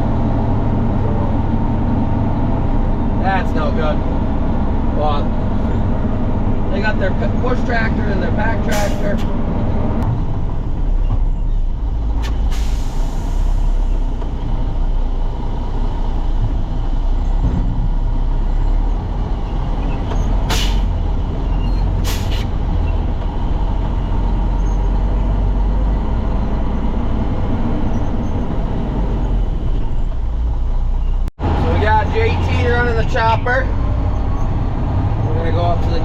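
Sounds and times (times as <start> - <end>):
truck diesel engine rumbling: 0.0 - 36.0
air brake hisses: 12.2 - 14.0, 20.5 - 20.9, 22.0 - 22.5.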